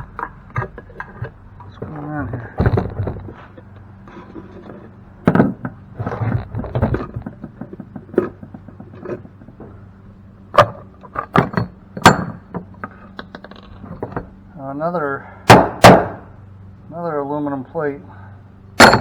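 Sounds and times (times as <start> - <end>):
metal parts knocking and clunking: 0.0 - 9.9, 10.5 - 14.4, 18.8 - 19.0.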